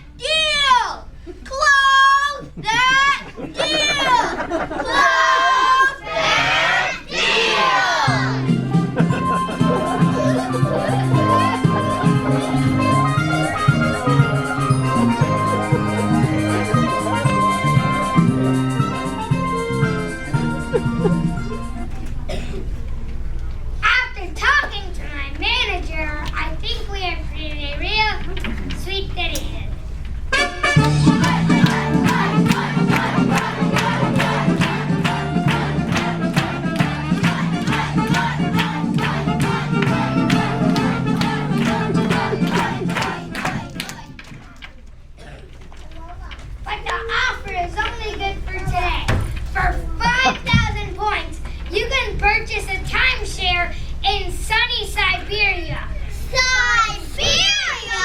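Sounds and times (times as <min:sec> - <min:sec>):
upbeat latin music: 0:08.2 - 0:22.0, 0:30.4 - 0:44.2.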